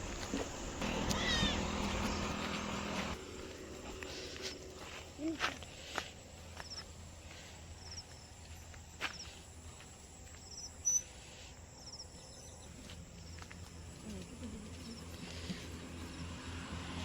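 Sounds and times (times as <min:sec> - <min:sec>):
low hum: 0:00.0 - 0:10.2.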